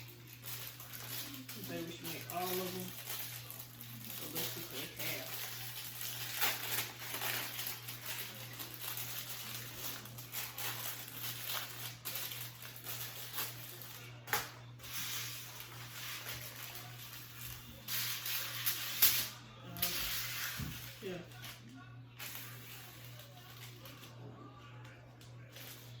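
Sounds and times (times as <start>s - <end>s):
packaging rustling and crinkling: 0.0s - 19.2s.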